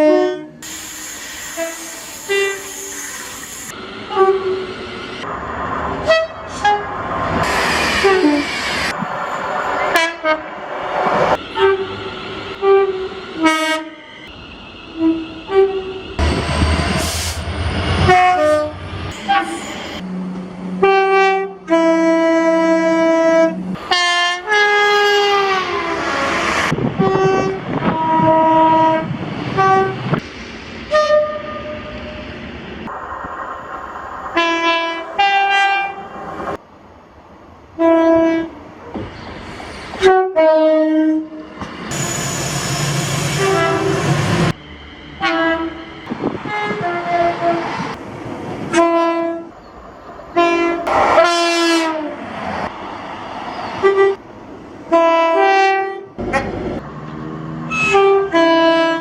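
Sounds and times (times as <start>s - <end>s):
train horn blasts: 0.0s - 0.6s, 1.5s - 2.9s, 6.0s - 6.9s, 9.9s - 10.6s, 11.4s - 14.3s, 15.0s - 16.4s, 18.0s - 26.3s, 27.0s - 30.2s, 30.9s - 32.2s, 37.8s - 38.6s, 40.0s - 41.4s, 43.1s - 44.2s, 45.2s - 47.6s, 48.7s - 49.5s, 50.3s - 52.2s, 53.8s - 54.2s, 54.9s - 56.6s, 57.7s - 59.0s.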